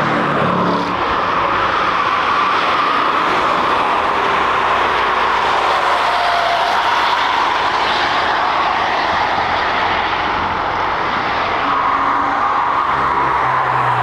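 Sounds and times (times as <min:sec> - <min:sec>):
race cars passing at speed: 0:00.0 - 0:14.0.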